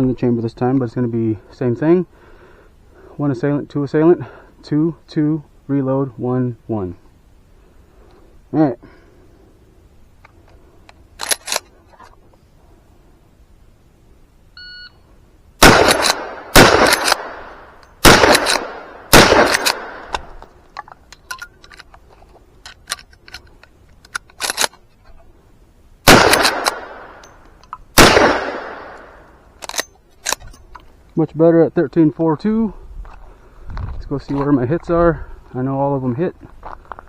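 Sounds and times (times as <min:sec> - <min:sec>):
rifle reloading clicks: 0:10.2 - 0:12.1, 0:15.6 - 0:24.8, 0:26.1 - 0:30.9
shot timer beep: 0:14.6 - 0:15.0
rifle shots: 0:15.6 - 0:20.4, 0:26.0 - 0:27.3, 0:27.9 - 0:29.8.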